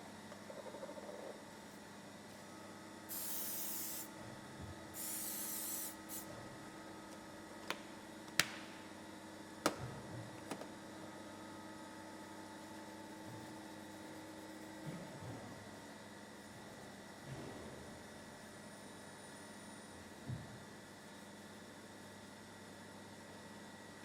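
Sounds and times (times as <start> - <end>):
aerosol spray hissing: 3.1 - 4.1, 5.0 - 6.3.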